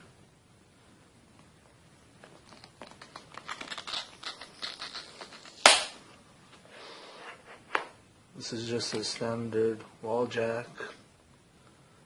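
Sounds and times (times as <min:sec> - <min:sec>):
packaging clicks and rustles: 0:02.2 - 0:05.6
packaging sharp snap: 0:02.5 - 0:06.0.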